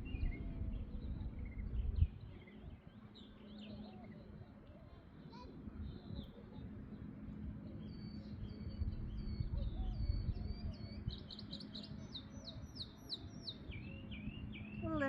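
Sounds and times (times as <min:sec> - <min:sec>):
wind noise: 0:00.0 - 0:03.0, 0:07.4 - 0:11.4
songbird singing: 0:00.0 - 0:15.0.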